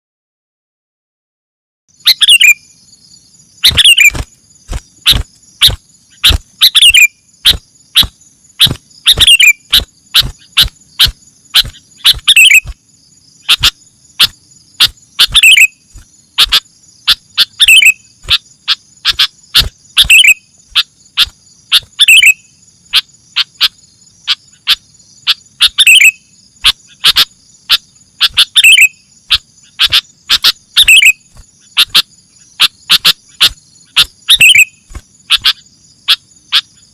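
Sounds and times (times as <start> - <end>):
insect drone: 1.9 - 36.9
bird chirping and whistling: 2.0 - 2.8, 3.6 - 4.3, 5.0 - 12.8, 13.4 - 22.5, 24.3 - 26.3, 27.0 - 35.6.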